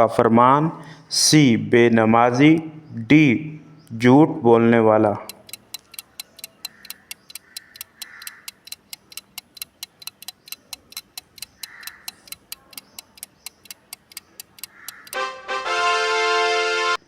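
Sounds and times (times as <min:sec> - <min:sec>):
clock ticking: 0:05.1 - 0:15.3.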